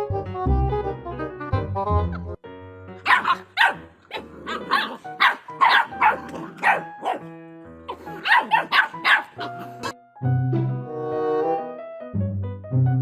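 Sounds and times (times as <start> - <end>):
background music: 0.0 - 13.0
dog barking: 3.0 - 7.3, 7.9 - 10.0.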